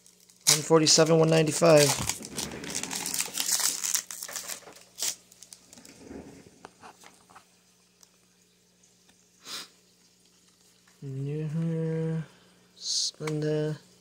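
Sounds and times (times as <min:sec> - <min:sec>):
foil wrapper crinkling: 0:00.0 - 0:06.0
cards being handled: 0:01.3 - 0:05.2.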